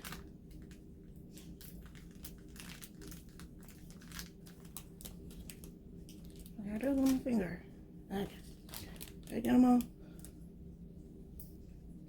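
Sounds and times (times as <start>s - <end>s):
plastic clicks and crinkles: 0.0s - 7.4s, 8.4s - 10.4s
low steady hum: 0.0s - 12.0s.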